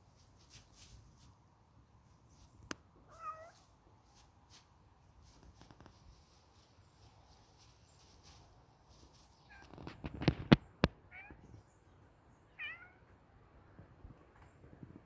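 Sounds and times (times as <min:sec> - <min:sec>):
cat meowing: 0:03.1 - 0:03.6, 0:11.1 - 0:11.4, 0:12.6 - 0:13.0.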